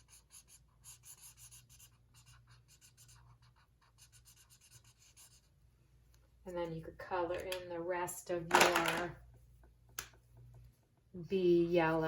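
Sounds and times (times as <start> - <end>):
drawing tool scratching on paper: 0.0 - 5.5.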